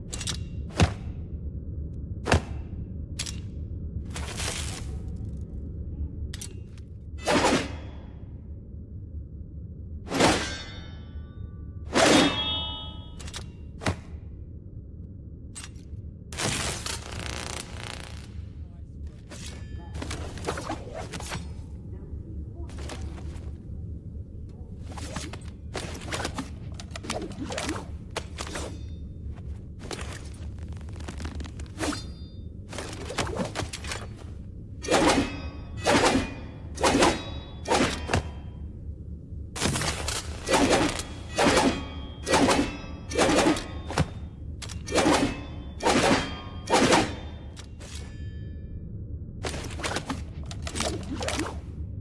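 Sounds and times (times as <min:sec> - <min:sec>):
steady low hum: 0:00.0 - 0:52.0
swords swishing and clashing: 0:07.2 - 0:08.0, 0:11.9 - 0:14.0, 0:34.8 - 0:38.5, 0:39.6 - 0:48.1.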